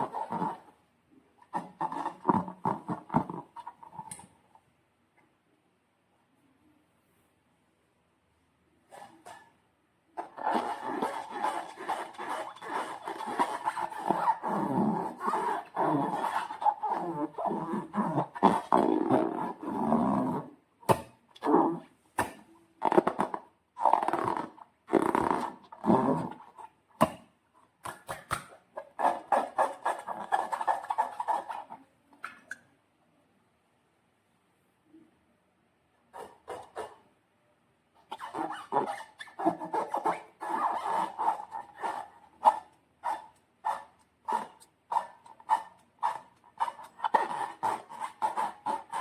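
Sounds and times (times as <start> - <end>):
squeaky rubber balloon rubbing: 0.0 - 0.8, 1.4 - 4.0, 10.2 - 20.6, 21.4 - 21.9, 22.8 - 26.7, 28.8 - 31.9, 36.1 - 37.0, 38.0 - 49.0.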